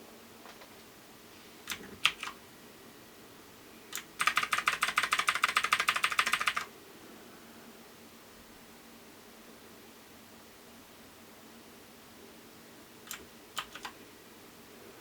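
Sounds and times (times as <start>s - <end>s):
mechanical keyboard typing: 1.7s - 2.4s, 3.9s - 6.7s, 13.1s - 14.0s.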